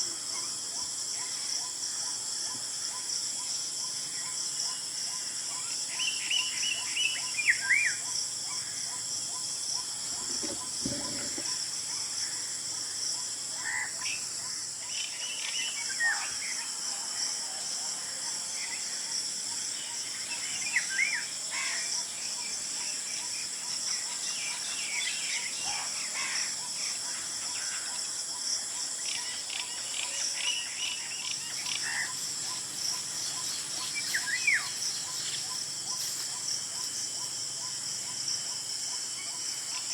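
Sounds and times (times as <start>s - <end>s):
high-pitched insect drone: 0.0s - 39.9s
orioles whistling calls: 28.6s - 38.2s.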